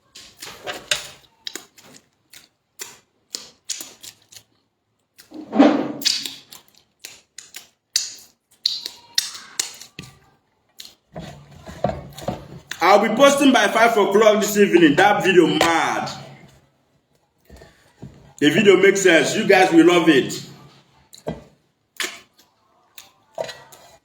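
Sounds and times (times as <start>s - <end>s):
eating clicks and smacks: 0.1s - 5.4s, 6.0s - 11.1s, 21.0s - 24.0s.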